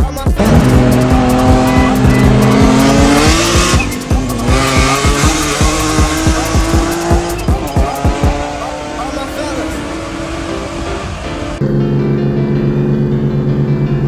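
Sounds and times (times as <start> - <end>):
hip-hop beat: 0.0 - 11.9
car engine at high revs: 0.4 - 14.0
tyres squealing: 0.5 - 10.6.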